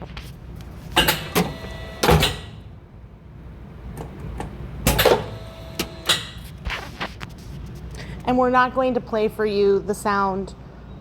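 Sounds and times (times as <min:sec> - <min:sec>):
press mechanical clunks: 0:00.9 - 0:02.7, 0:03.9 - 0:06.4.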